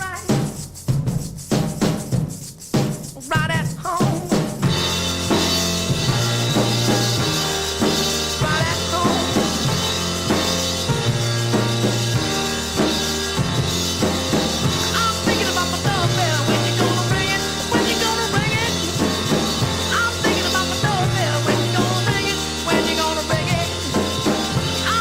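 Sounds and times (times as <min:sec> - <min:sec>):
low bass notes: 0:04.6 - 0:25.0
rock band playing: 0:04.6 - 0:25.0.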